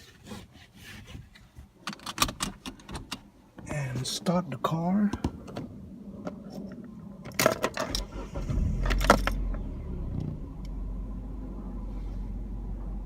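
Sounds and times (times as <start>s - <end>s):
keys rattling in ignition: 7.3s - 9.4s
car engine starting and idling: 7.6s - 13.0s.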